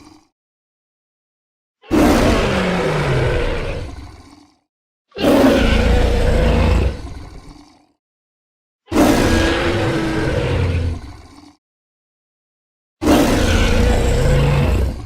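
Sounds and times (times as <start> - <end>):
deep dinosaur roars: 1.8 - 8.0, 8.9 - 11.6, 13.0 - 15.0.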